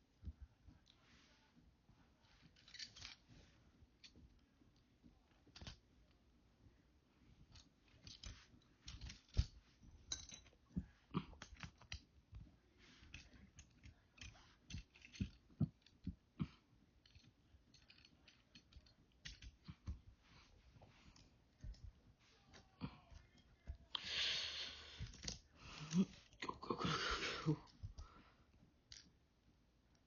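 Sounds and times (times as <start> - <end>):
plastic toy parts clicking and snapping: 2.6 - 3.2, 5.3 - 5.8, 7.5 - 10.5, 11.2 - 16.2, 17.0 - 20.0, 25.0 - 26.0.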